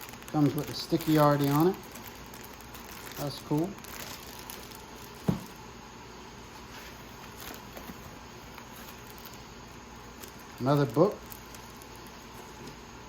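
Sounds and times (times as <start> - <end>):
packaging ticks and rustles: 0.0 - 5.7, 6.6 - 12.9
dull thump: 5.2 - 5.6.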